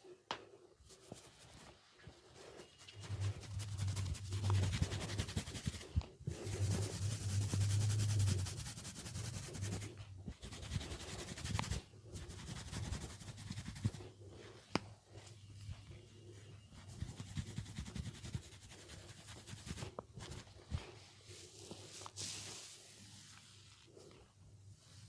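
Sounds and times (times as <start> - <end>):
fingers scratching hair: 0.8 - 14.4, 16.7 - 20.9.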